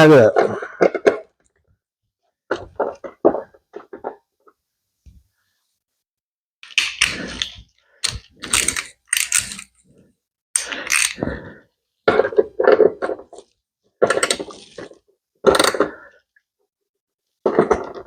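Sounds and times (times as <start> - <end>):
socket ratchet clicking: 8.0 - 9.8, 10.6 - 11.2.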